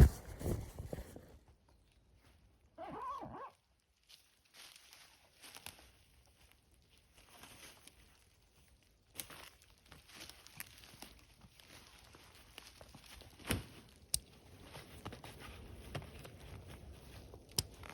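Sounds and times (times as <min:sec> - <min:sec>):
footsteps: 0:00.0 - 0:01.3, 0:10.1 - 0:17.9.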